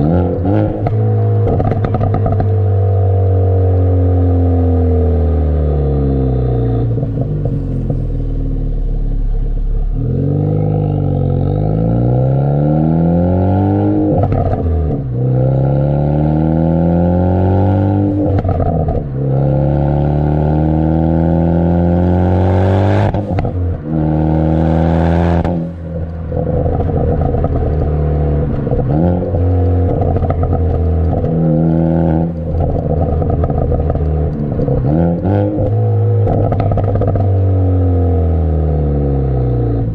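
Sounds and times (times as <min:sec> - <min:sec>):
car engine revving: 0:00.0 - 0:39.9
exhaust pops and crackles: 0:00.6 - 0:02.7, 0:18.3 - 0:19.2, 0:25.4 - 0:37.4.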